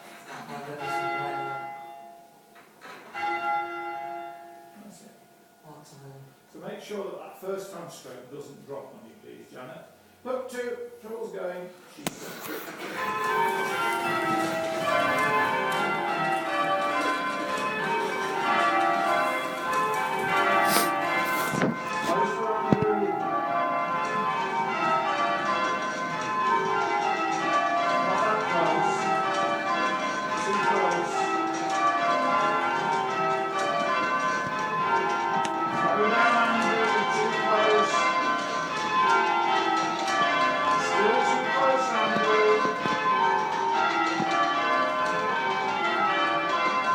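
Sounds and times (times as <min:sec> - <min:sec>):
church bells change ringing: 0:00.4 - 0:02.5, 0:03.1 - 0:05.6, 0:12.7 - 0:46.9.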